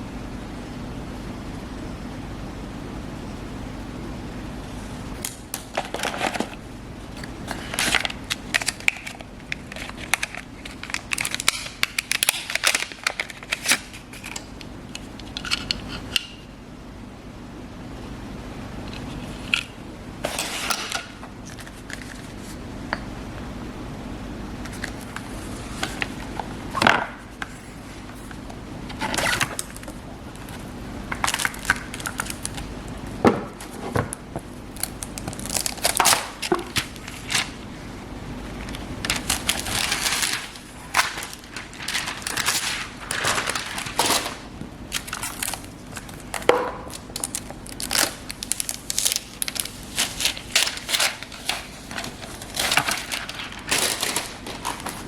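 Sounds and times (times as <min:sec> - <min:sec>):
plastic wrap and cardboard crinkling: 0:07.2 - 0:16.1, 0:27.2 - 0:32.7, 0:33.5 - 0:37.6, 0:38.6 - 0:55.0.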